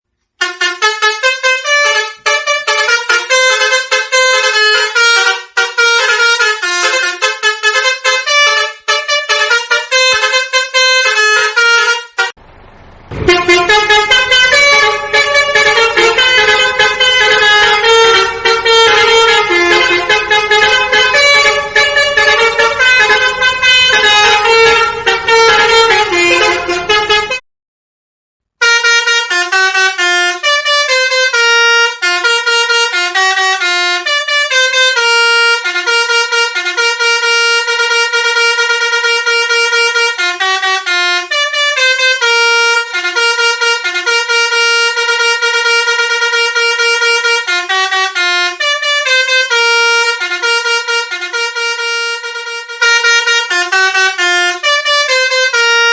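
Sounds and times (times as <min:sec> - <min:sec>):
musical bus horns playing tunes: 0:00.2 - 0:27.4, 0:28.5 - 0:55.9.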